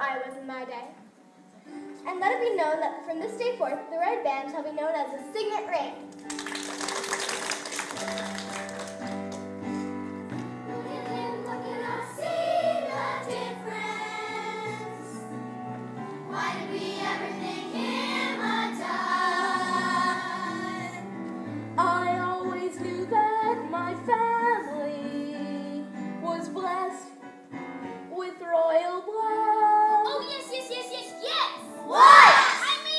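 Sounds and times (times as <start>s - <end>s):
instrumental accompaniment: 5.2s - 24.5s
group singing show tune: 10.7s - 15.2s, 16.3s - 21.1s.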